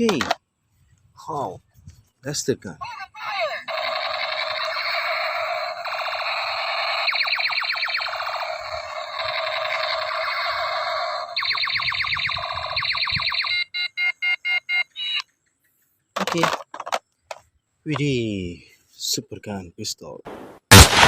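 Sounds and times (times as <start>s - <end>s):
toy blaster electronic buzzing: 3.7s - 13.5s.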